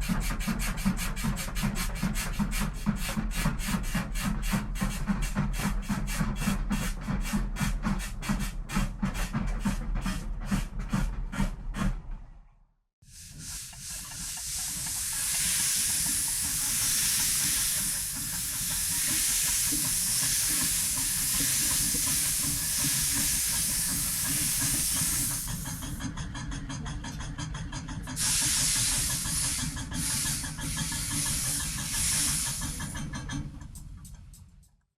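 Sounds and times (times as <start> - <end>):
steam locomotive hissing steam: 0.0 - 10.7, 13.0 - 26.2, 28.0 - 33.6.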